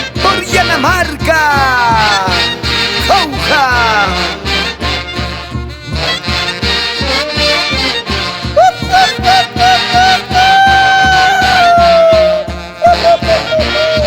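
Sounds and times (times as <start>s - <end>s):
lead melody: 0.0s - 10.4s
band music: 0.0s - 14.0s
steady drum beat: 0.0s - 14.0s.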